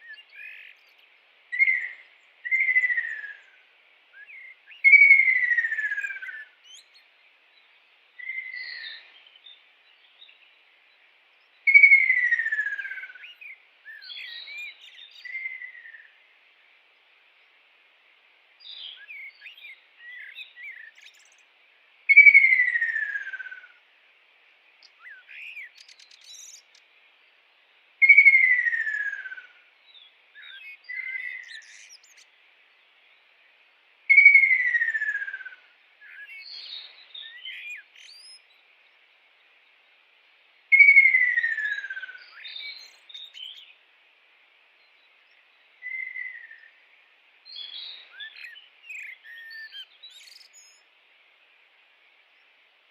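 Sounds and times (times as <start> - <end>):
soft short bird chirps: 47.5 - 50.9.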